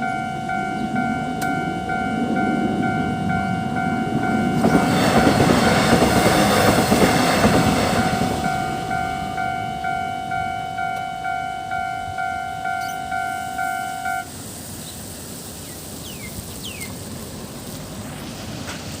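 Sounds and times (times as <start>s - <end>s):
level crossing bell ringing: 0.0s - 6.3s, 7.9s - 14.3s.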